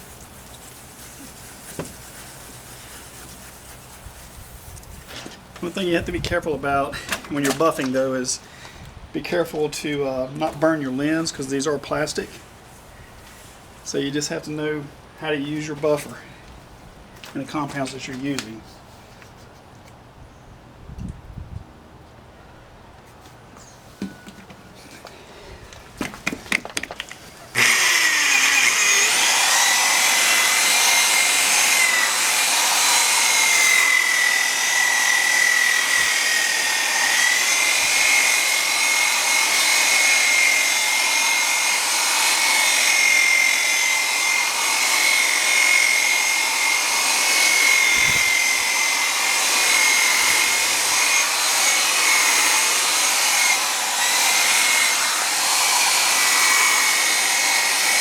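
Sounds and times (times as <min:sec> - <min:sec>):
electric buffer motor whine: 0:27.5 - 0:58.0.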